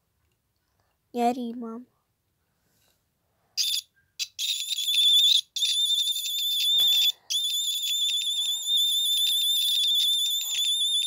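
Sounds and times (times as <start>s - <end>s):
fire alarm sounder: 3.6s - 11.0s.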